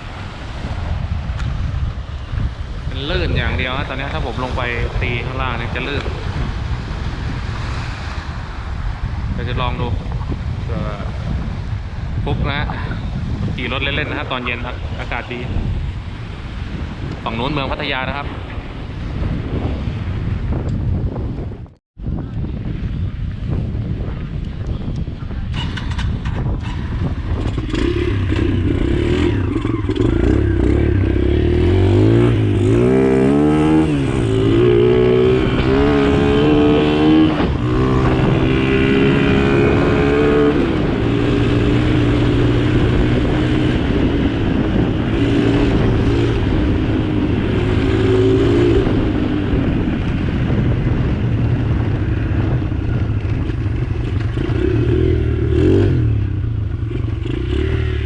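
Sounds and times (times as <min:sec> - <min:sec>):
motorcycle engine running: 0:24.1 - 0:58.0.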